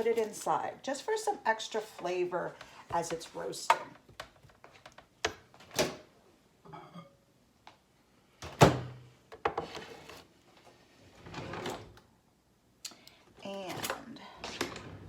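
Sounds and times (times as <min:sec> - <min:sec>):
kitchen knocks and thunks: 0:08.4 - 0:09.6.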